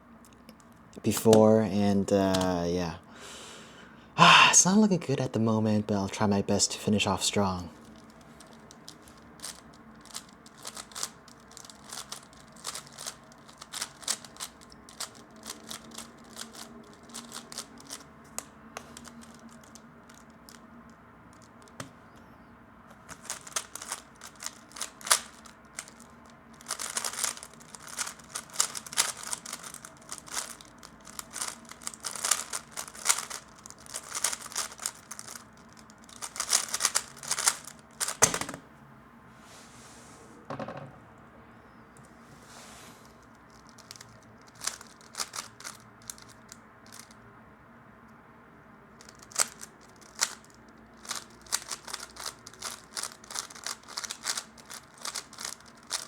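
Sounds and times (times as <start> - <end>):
puzzle cube plastic clicks: 2.2 - 2.6, 7.4 - 22.3, 23.0 - 38.6, 43.1 - 47.2, 49.0 - 56.0.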